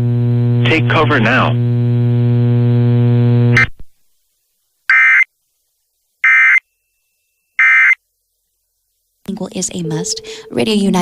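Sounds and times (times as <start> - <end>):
low electrical buzz: 0.0 - 6.2.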